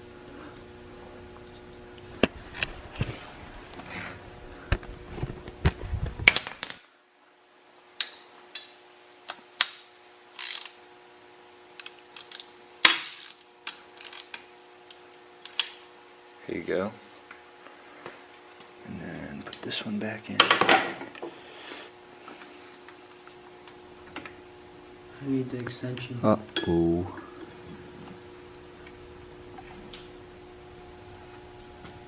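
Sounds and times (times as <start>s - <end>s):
ratchet clicks: 10.4s - 10.7s.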